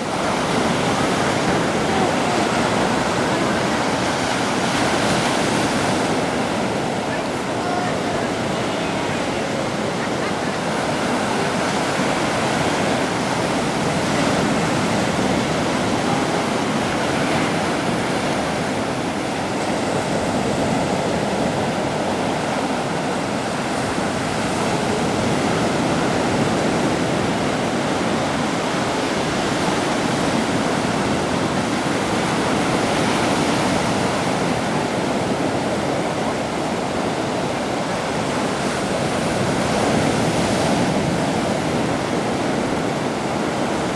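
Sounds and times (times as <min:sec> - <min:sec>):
surf washing onto shore: 0:00.0 - 0:43.9.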